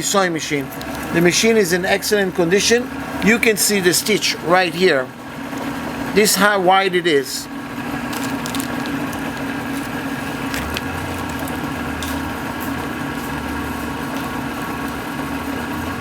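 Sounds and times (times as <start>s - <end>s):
sewing machine motor humming: 0.6s - 4.6s, 7.6s - 16.0s
deeper hum: 7.6s - 16.0s.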